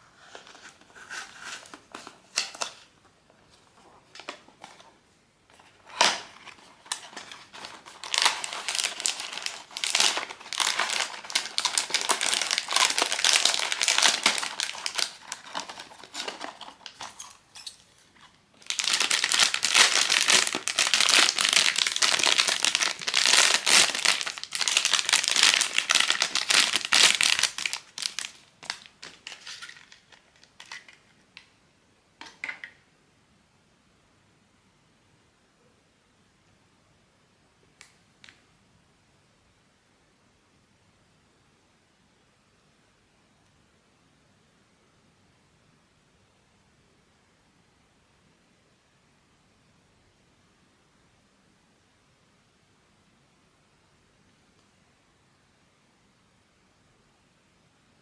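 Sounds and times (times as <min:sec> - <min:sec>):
packaging rustles and clicks: 0:00.3 - 0:31.2
packaging crinkling and tearing: 0:05.6 - 0:31.1.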